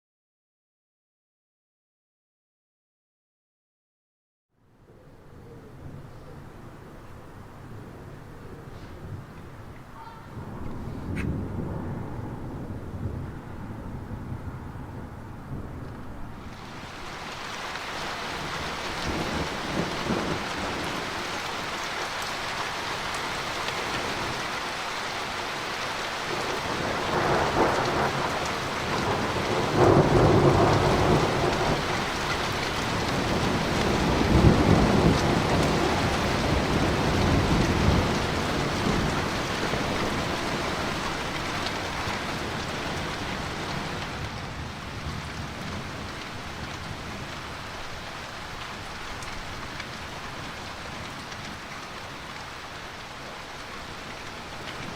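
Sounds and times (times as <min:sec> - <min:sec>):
steady rain: 0:04.6 - 0:54.9
rolling thunder: 0:10.2 - 0:21.7, 0:26.3 - 0:47.7.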